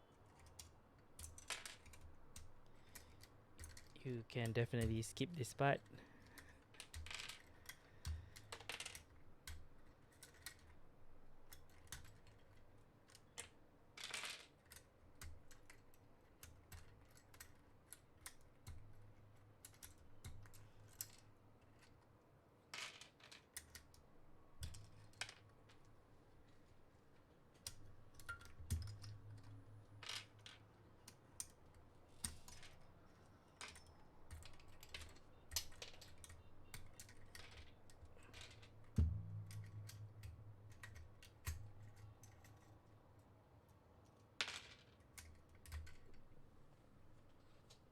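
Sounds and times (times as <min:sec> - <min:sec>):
sharp knocks: 0:39.0 - 0:40.6.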